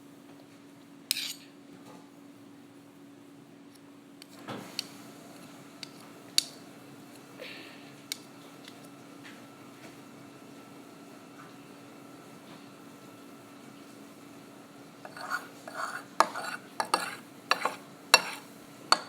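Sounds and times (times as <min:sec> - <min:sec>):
faint steady hum: 0:00.0 - 0:19.0
utensil clinking on a dish: 0:15.1 - 0:19.0.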